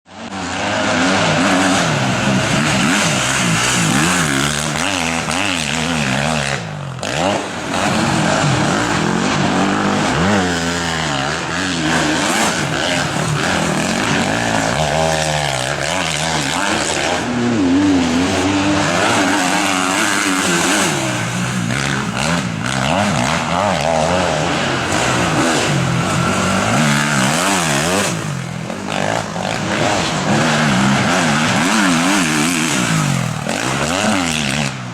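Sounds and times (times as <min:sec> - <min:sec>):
motocross engines revving: 0:00.1 - 0:34.9.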